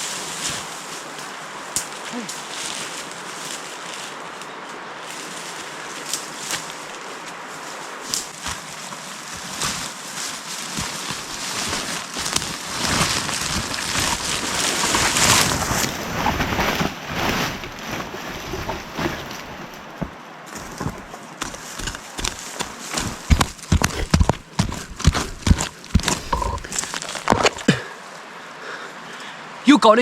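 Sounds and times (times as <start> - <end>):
dry leaves rustling and crackling: 0.0 - 27.9
twigs snapping and knocks: 8.0 - 9.9, 17.5 - 27.8.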